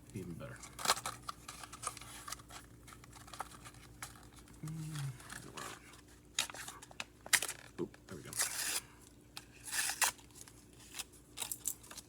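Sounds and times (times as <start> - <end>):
plastic packaging crinkling: 0.2 - 8.8, 9.4 - 12.0
person humming: 4.6 - 5.2.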